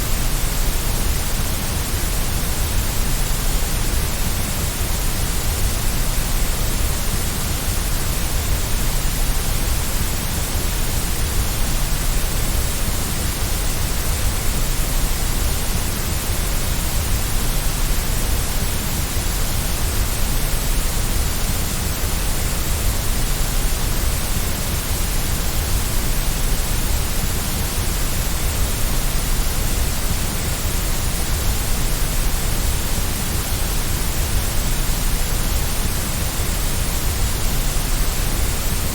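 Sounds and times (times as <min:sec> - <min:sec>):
white noise hiss: 0:00.0 - 0:38.9.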